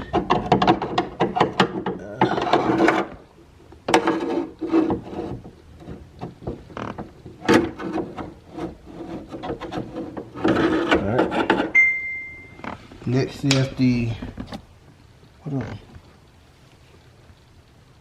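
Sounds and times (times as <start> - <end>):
plastic slider scraping metal channel: 0.0 - 3.2, 3.9 - 11.7.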